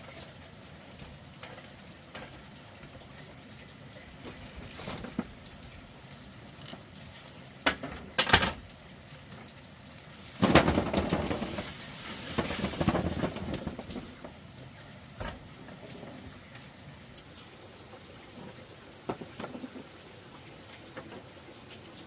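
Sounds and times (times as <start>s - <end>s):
clattering and rustling: 4.2s - 5.4s, 7.7s - 8.7s, 10.4s - 14.4s, 15.2s - 16.3s.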